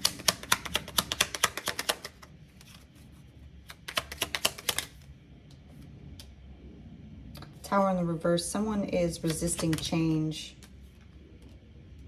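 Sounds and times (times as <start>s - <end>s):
cards being shuffled: 0.0s - 3.0s, 3.6s - 5.0s.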